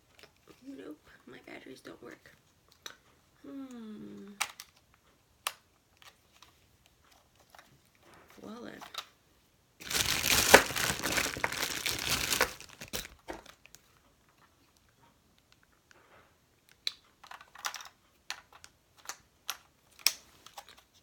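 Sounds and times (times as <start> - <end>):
packaging crinkling: 9.8 - 13.4.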